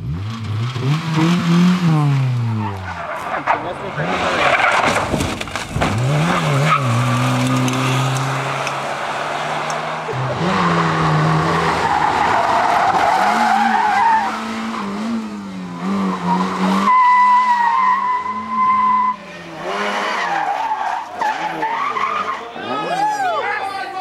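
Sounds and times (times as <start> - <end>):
racing car engine revving: 0.0 - 22.4
tyre squeal: 16.2 - 19.3.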